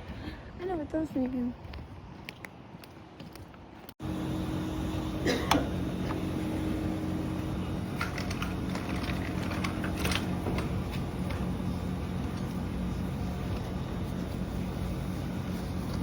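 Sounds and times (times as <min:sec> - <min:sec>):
steady machine hum: 0:04.0 - 0:16.0.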